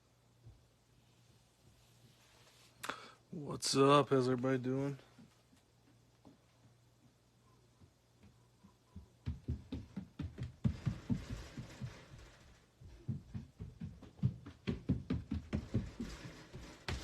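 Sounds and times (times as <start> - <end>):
faint steady hum: 0.0 - 17.0
dull knocks and thumps: 7.8 - 17.0.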